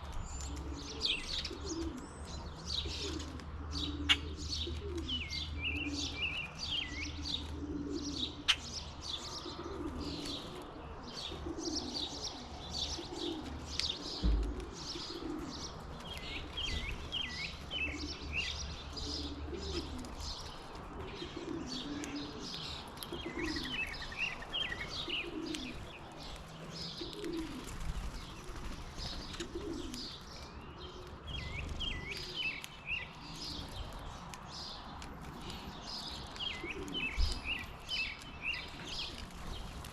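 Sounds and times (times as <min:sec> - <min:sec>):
small birds chirping: 0:00.0 - 0:39.9
low cooing: 0:19.0 - 0:20.0.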